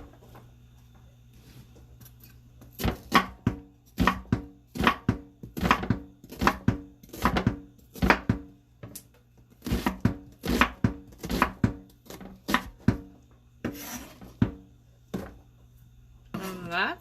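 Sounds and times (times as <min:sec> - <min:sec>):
knife chopping on cutting board: 0:02.8 - 0:08.5, 0:09.6 - 0:14.6
knife scraping board: 0:13.6 - 0:14.4.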